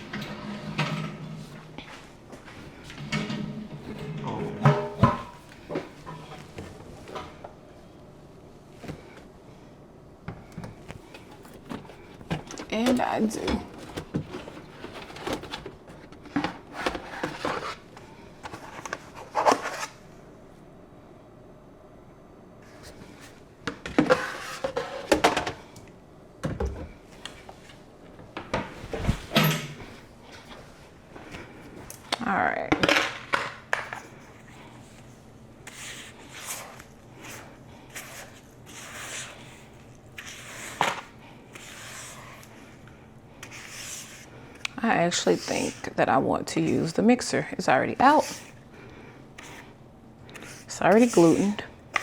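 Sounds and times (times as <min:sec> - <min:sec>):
kitchen utensils clattering: 0:02.9 - 0:05.4.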